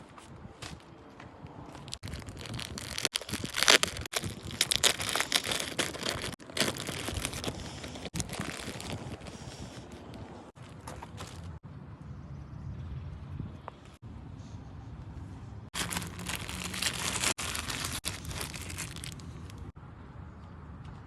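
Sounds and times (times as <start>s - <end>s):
material crinkling and rustling: 1.8s - 9.4s, 15.8s - 19.7s.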